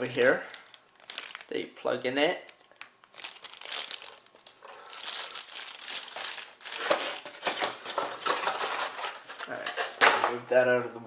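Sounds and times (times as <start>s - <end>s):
packaging crinkling: 0.0s - 1.6s, 2.4s - 9.6s.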